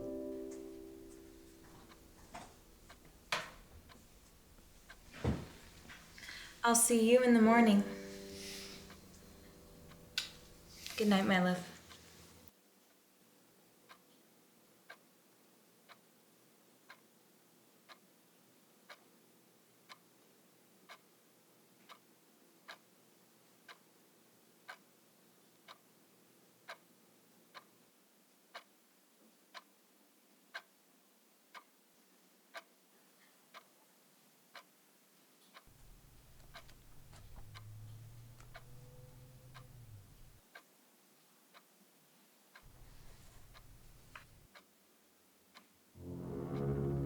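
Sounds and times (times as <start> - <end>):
clock ticking: 0.0 - 12.0, 35.6 - 40.6, 42.6 - 44.5, 46.0 - 47.0.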